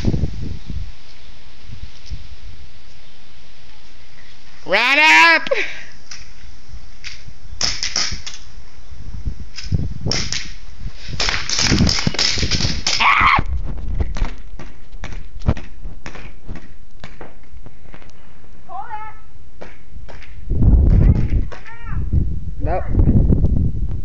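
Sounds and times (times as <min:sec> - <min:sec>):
airsoft gun shots: 0:07.6 - 0:08.4, 0:09.6 - 0:10.6.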